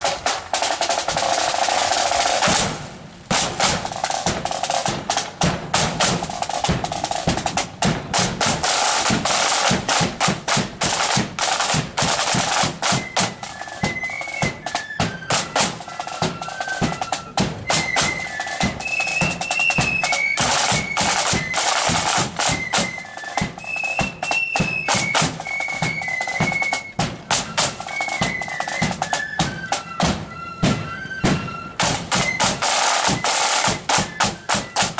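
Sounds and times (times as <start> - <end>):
flute melody: 0.0 - 34.9
snare drum rolls: 0.0 - 34.9
bass drum: 2.4 - 12.0.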